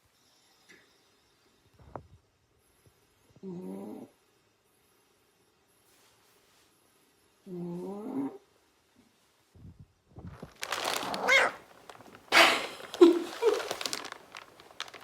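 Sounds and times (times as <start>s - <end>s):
cat snoring: 3.4s - 4.2s, 7.5s - 8.4s.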